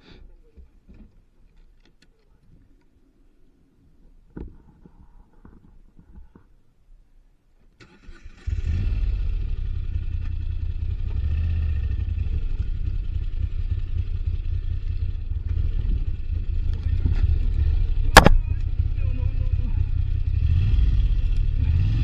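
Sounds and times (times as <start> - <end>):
motorcycle engine running: 8.9 - 22.0.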